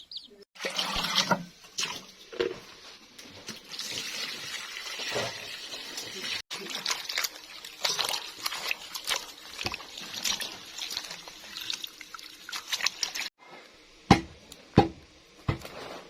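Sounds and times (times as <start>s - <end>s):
water splashing and trickling: 0.6s - 2.4s, 3.4s - 13.4s.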